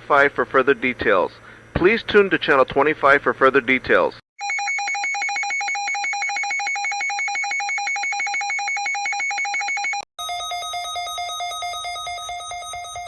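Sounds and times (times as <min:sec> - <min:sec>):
rapid high-pitched alarm beeping: 0:04.4 - 0:13.0.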